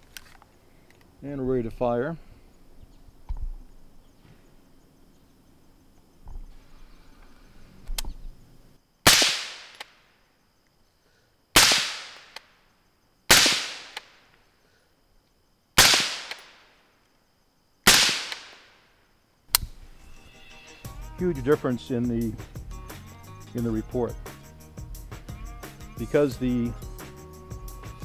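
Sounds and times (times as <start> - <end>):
suppressed rifle shots: 9.0 - 10.0, 11.6 - 12.5, 13.3 - 14.2, 15.8 - 16.7, 17.9 - 18.8
sharp click: 16.2 - 16.5.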